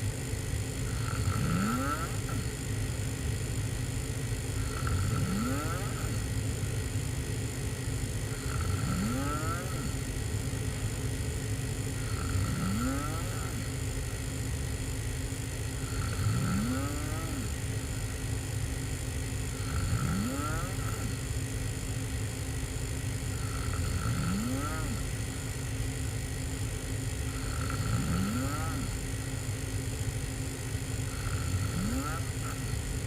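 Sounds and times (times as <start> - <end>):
person snoring hard: 0.0 - 21.6, 22.2 - 33.0.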